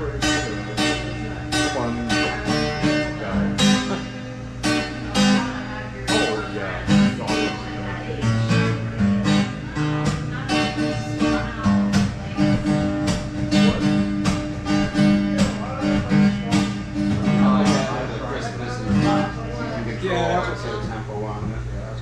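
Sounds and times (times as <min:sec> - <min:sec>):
guitar strummed: 0:00.0 - 0:21.7.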